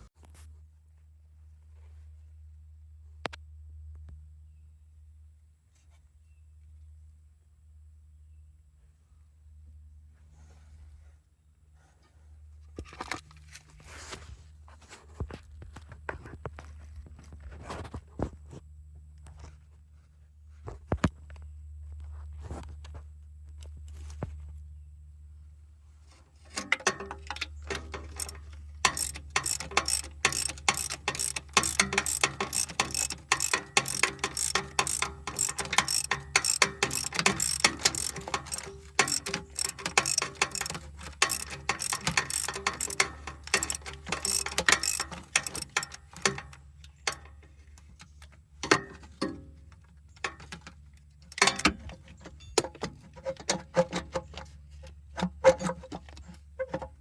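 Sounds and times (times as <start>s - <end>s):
ratchet wrench clicking: 26.5s - 47.3s.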